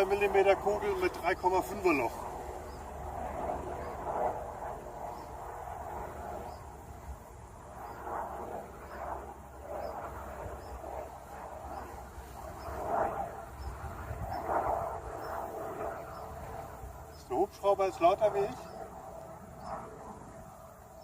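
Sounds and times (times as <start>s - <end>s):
helicopter drone: 0.0s - 21.0s.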